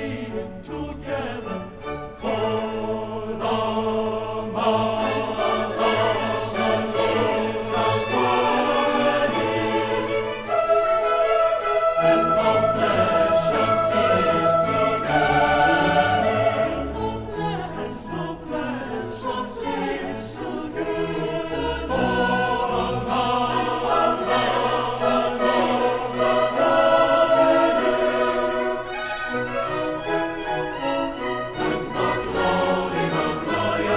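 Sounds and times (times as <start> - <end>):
choir singing: 0.0 - 33.9
orchestra playing: 4.6 - 33.9.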